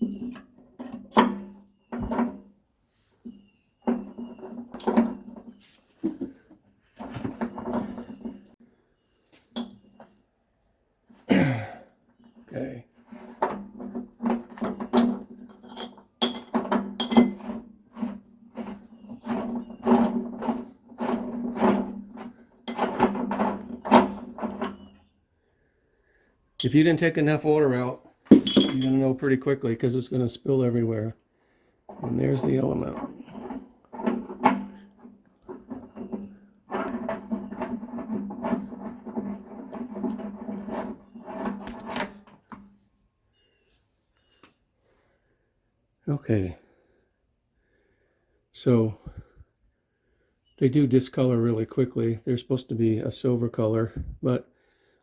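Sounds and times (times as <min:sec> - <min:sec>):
metal wrench scraping and clinking: 0:14.8 - 0:17.6, 0:18.6 - 0:23.9, 0:28.3 - 0:29.1
rasping metal scrapes: 0:35.5 - 0:42.3.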